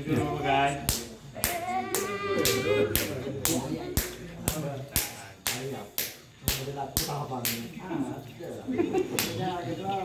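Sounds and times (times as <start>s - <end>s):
sharp hand slaps: 0.8s - 7.7s, 9.2s - 9.4s
low voice murmuring: 1.4s - 4.4s.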